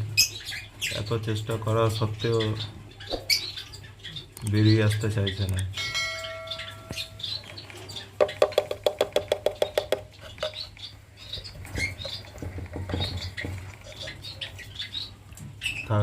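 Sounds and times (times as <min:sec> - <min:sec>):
lovebirds chirping: 0:00.0 - 0:16.0
sharp taps: 0:08.2 - 0:10.6.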